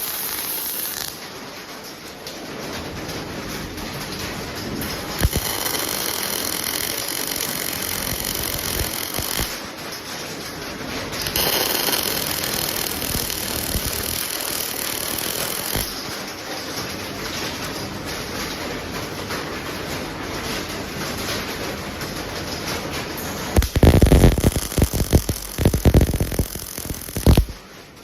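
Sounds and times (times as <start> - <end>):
arc welding hiss: 0.0 - 1.2, 5.2 - 9.6, 11.2 - 16.1, 23.6 - 27.6
welding arc striking crack: 0.0 - 1.4, 5.0 - 9.8, 11.1 - 16.3, 23.4 - 27.6.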